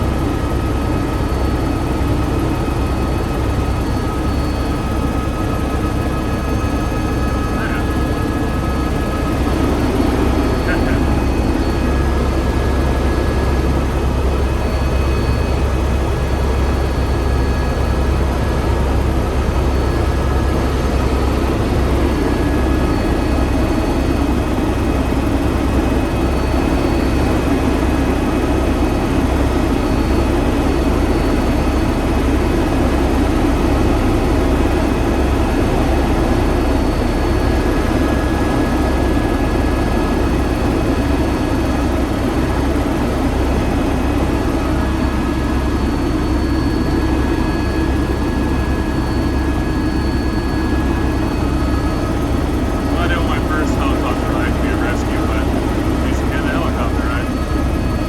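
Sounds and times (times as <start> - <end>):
helicopter engine and rotor drone: 0.0 - 58.0.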